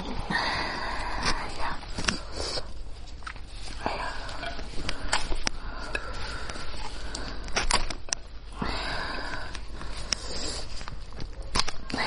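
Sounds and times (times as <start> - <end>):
breathy sucking sounds: 3.7 - 11.1.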